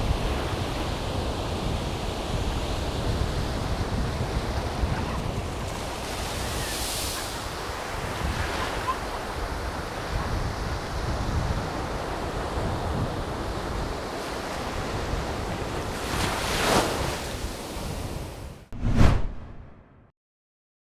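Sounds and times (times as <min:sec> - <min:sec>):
waves roaring onto beach: 0:00.0 - 0:18.6
low wind rumble: 0:18.8 - 0:19.8.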